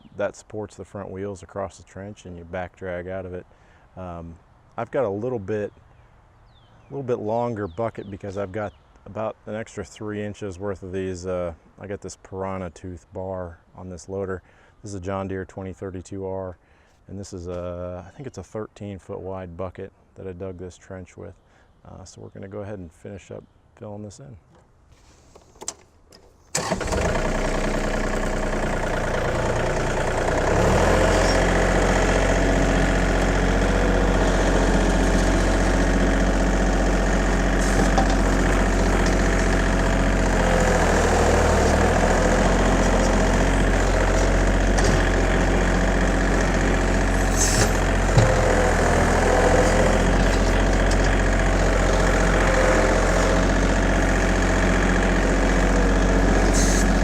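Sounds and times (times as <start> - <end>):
tractor diesel engine running: 26.5 - 57.0.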